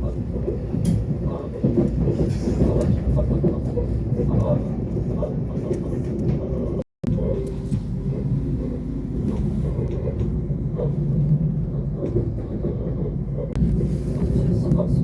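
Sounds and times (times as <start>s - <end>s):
train interior rumble: 0.0s - 15.0s.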